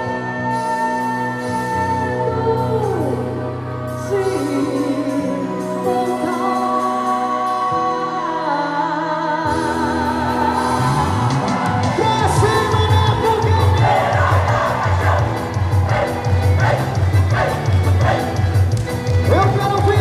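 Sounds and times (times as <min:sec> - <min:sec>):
person singing: 0:00.0 - 0:20.0
steady low beat: 0:11.7 - 0:20.0.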